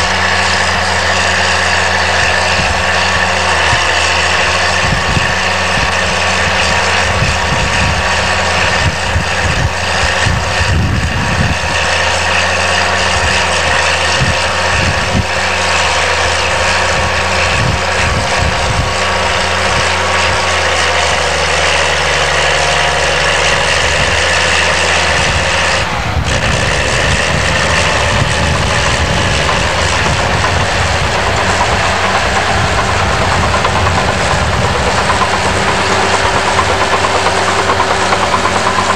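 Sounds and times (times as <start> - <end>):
bulldozer diesel engine running: 0.0 - 38.9
high steady whine: 0.0 - 38.9
metal knocks and clanks: 27.8 - 38.9.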